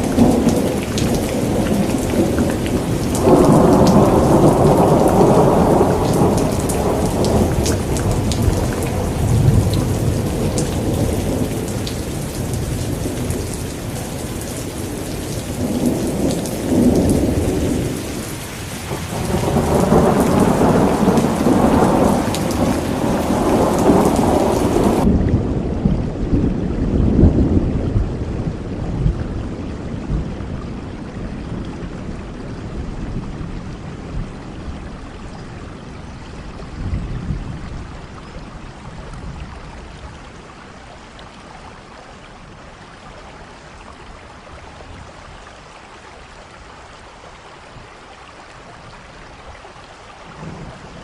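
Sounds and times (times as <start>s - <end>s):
rolling thunder: 0.0s - 31.8s
heavy rain: 0.0s - 51.0s.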